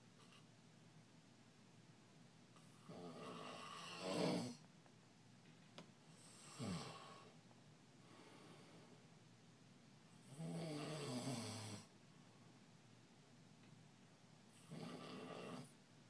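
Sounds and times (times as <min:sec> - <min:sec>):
man snoring: 0:02.8 - 0:04.6, 0:06.2 - 0:07.3, 0:10.2 - 0:11.9, 0:14.6 - 0:15.7.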